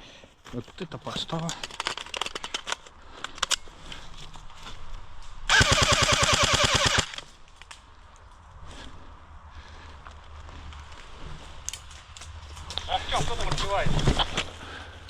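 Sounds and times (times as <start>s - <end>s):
airsoft rifle full-auto burst: 5.5s - 7.3s.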